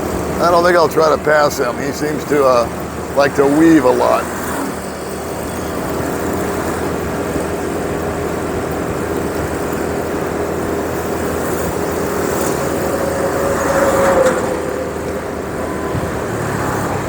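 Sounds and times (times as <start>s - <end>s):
motorbike engine cruising: 0.0s - 17.0s
wind noise on microphone: 4.5s - 17.0s.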